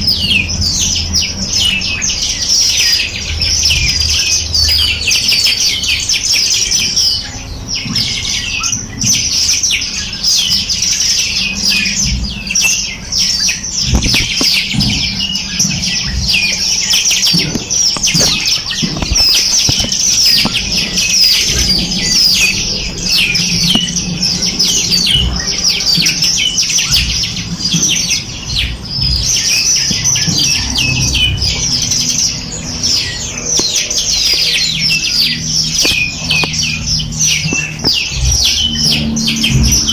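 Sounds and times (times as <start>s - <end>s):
flock of birds chirping: 0.0s - 39.9s
scattered thumps: 13.8s - 39.9s.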